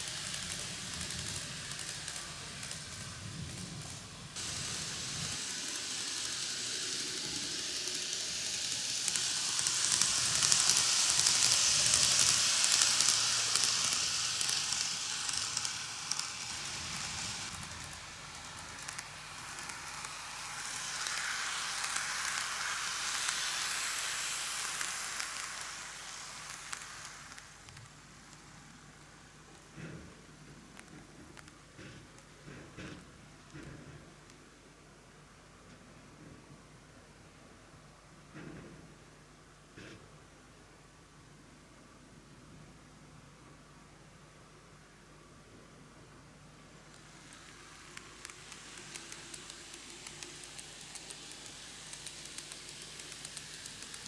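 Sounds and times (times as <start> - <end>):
model train whirring on track: 0.0 - 35.7, 44.0 - 54.0.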